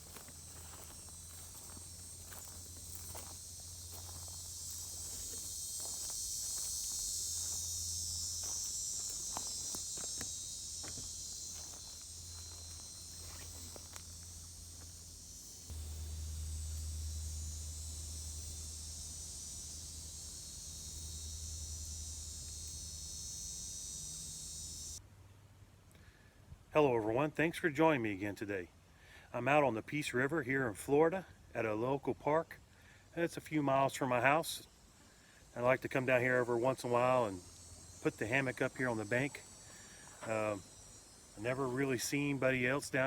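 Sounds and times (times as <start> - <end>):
footsteps: 0.0 - 18.8
insects buzzing: 0.0 - 25.0, 32.6 - 43.0
low rumble: 11.6 - 23.2.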